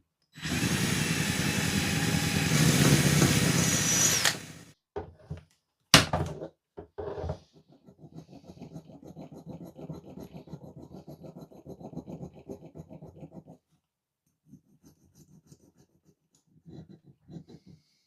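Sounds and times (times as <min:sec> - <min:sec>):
hand scratching metal: 0:07.4 - 0:13.6.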